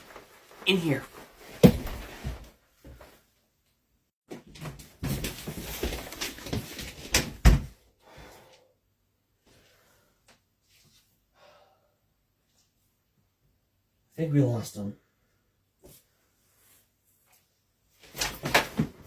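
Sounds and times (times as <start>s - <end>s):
shuffling and rustling: 4.3s - 7.4s.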